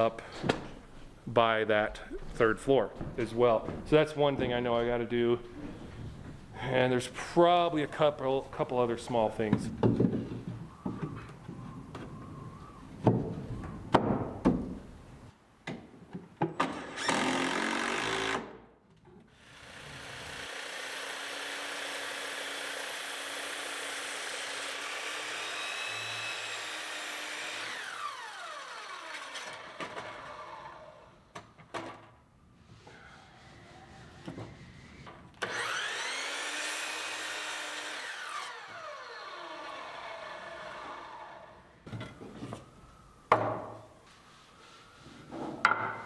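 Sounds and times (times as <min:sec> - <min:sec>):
construction knocks: 0:02.2 - 0:06.5, 0:09.5 - 0:12.1, 0:13.0 - 0:15.0
power tool whine: 0:19.4 - 0:31.1, 0:35.4 - 0:41.6.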